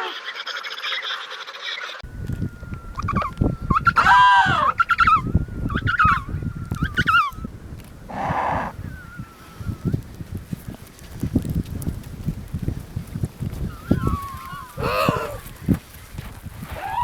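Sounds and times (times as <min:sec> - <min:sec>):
penguins calling: 0:00.0 - 0:09.8, 0:13.6 - 0:15.8, 0:16.7 - 0:17.0
thin high whistle: 0:02.0 - 0:07.5
low rumbling: 0:02.0 - 0:17.0.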